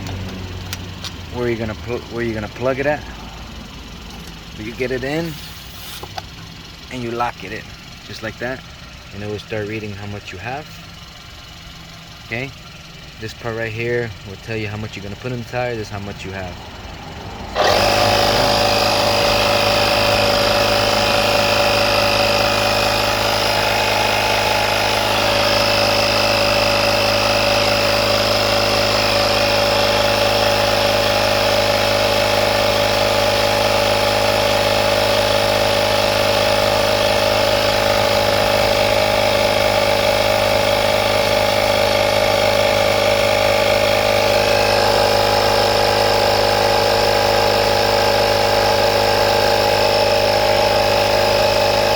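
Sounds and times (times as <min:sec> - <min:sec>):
tire inflator compressor running: 0:00.0 - 0:51.9.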